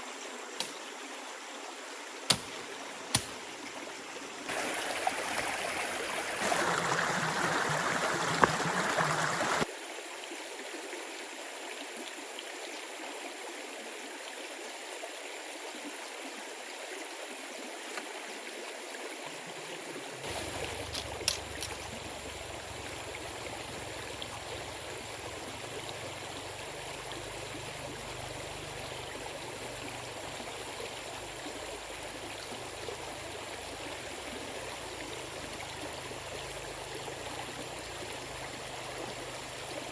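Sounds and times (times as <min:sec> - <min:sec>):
stream water running: 0:00.0 - 0:39.9.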